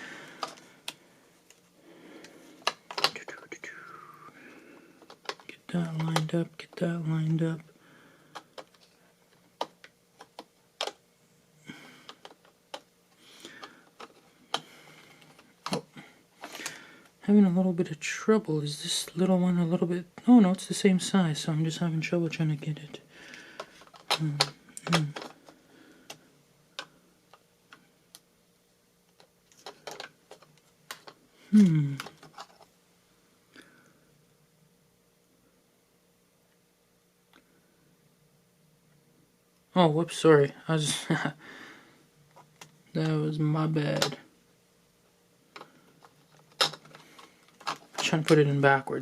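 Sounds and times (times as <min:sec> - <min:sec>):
plastic laptop parts clicking: 0:02.6 - 0:03.2.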